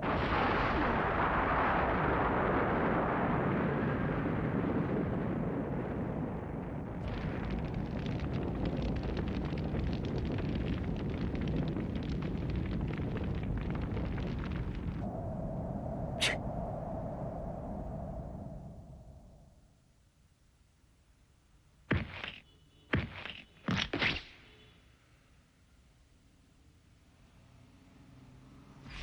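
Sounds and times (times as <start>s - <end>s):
loud explosion blast: 0.0s - 15.3s
crackling rumble: 0.0s - 24.4s, 26.5s - 29.0s.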